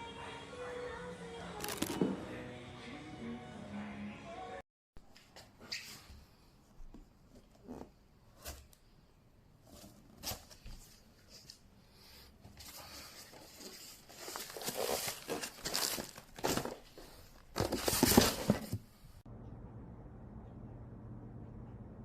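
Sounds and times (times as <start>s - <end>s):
rustling and crinkling: 1.6s - 2.3s, 9.6s - 11.7s, 12.4s - 19.2s.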